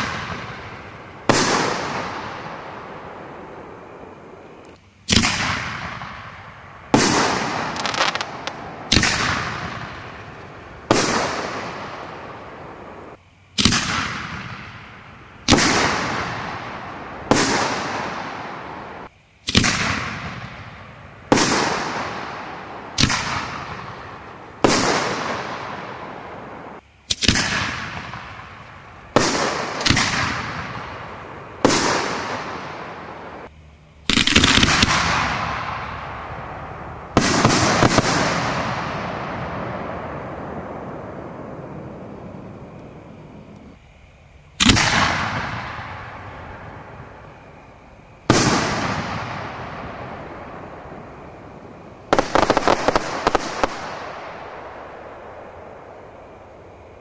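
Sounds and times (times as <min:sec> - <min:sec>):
firework shells bursting: 0:04.6 - 0:14.8, 0:27.1 - 0:36.0, 0:52.1 - 0:55.4.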